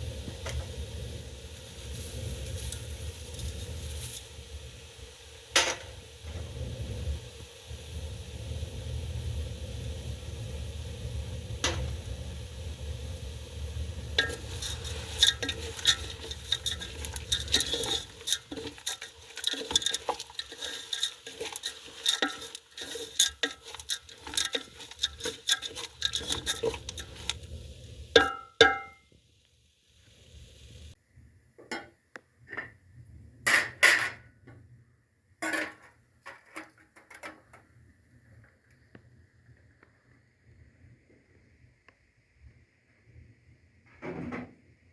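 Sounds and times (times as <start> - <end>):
metal spoon scraping in a pot: 13.8 - 29.0.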